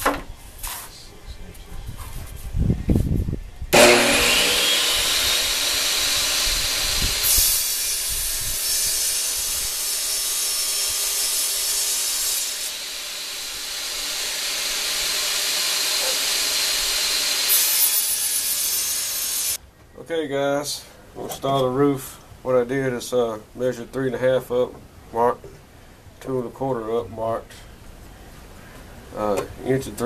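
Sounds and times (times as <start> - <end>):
table saw cutting plastic sheet: 3.8 - 19.6.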